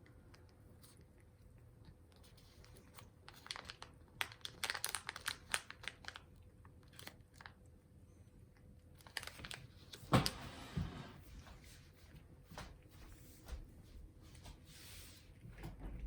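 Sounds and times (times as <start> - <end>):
cat crunching dry treats: 0.0 - 7.6, 8.6 - 10.1.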